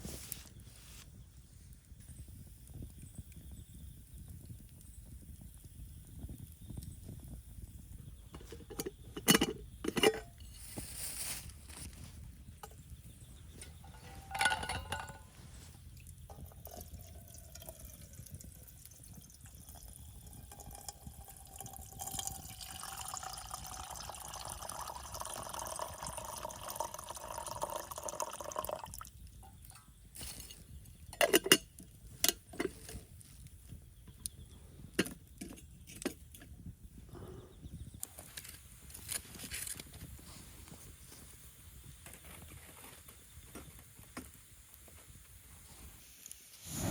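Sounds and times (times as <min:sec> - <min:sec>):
cookware clinking: 0:08.5 - 0:10.4, 0:13.6 - 0:15.3
liquid pouring: 0:16.4 - 0:29.1.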